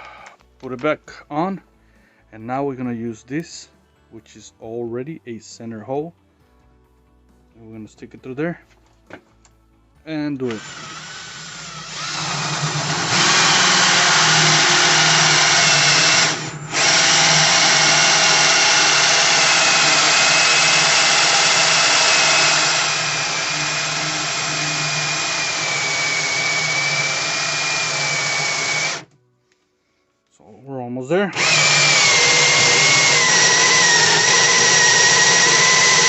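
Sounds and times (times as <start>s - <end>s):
power drill boring through door: 0.0s - 0.4s, 10.5s - 29.1s, 31.3s - 36.0s.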